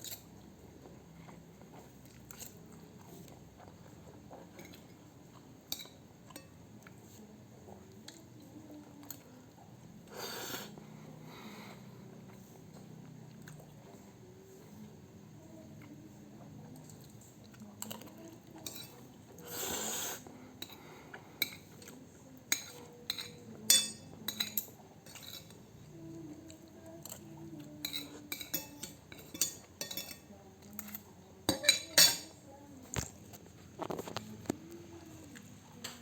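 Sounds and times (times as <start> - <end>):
cutlery clinking on a plate: 17.8 - 19.0, 22.5 - 25.6, 27.8 - 32.4.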